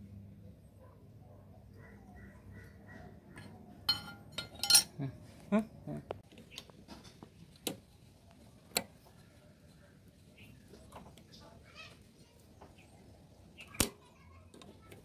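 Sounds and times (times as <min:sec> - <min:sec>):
metal tools clinking: 0:03.9 - 0:05.0.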